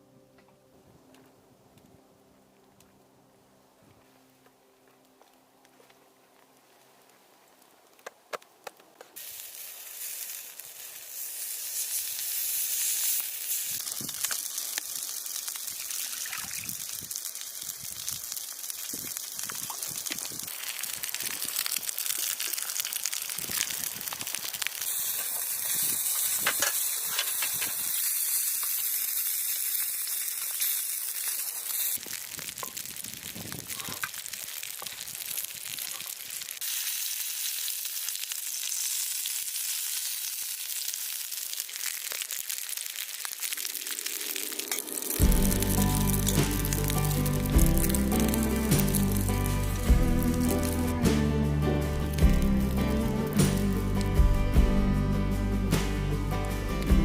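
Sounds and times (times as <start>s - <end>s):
pops and crackles: 7.6s - 51.1s, 52.0s - 54.2s
food sizzling in a hot pan: 9.2s - 54.2s.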